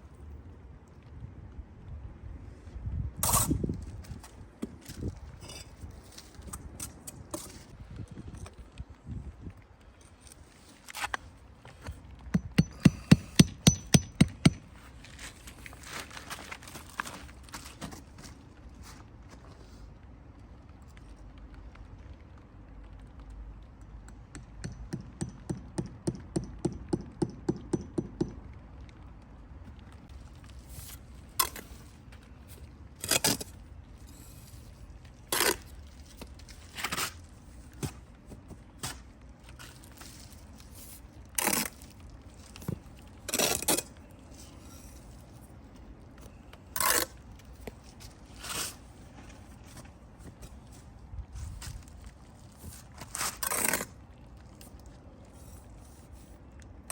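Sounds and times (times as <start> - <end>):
trowel scraping mortar: 3.2 - 3.7, 30.7 - 32.0, 33.0 - 35.8, 40.6 - 41.9, 42.6 - 45.2, 46.7 - 47.2, 48.3 - 49.4, 52.6 - 54.0
trowel tapping: 12.4 - 14.6, 24.1 - 28.4.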